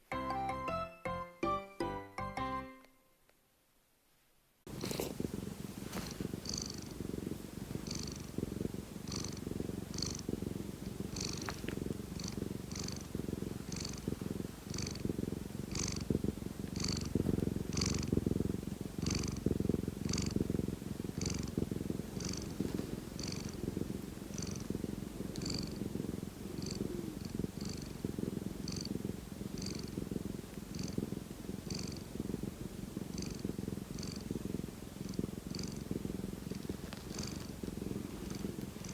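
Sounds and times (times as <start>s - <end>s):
cat purring: 4.7s - 38.9s.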